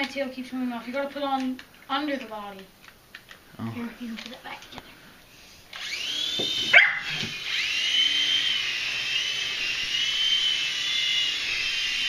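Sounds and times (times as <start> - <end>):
small helicopter motor whine: 5.7 - 12.0.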